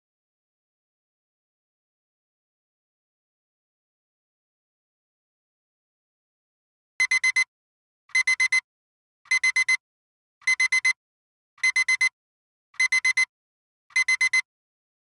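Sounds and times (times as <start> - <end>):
alarm clock beeping: 7.0 - 7.5, 8.2 - 8.6, 9.3 - 9.8, 10.5 - 11.0, 11.6 - 12.1, 12.8 - 13.3, 14.0 - 14.4.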